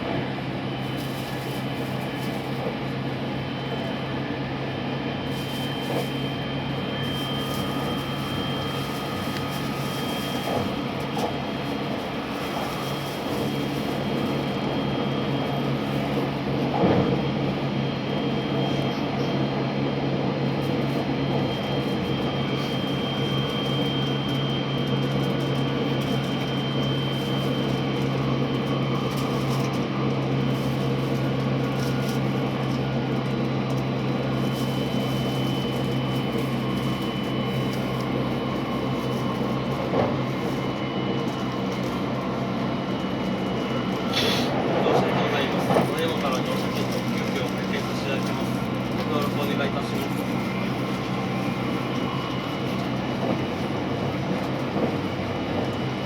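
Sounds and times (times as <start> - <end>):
train cabin hum: 0.0 - 18.8, 37.5 - 56.0.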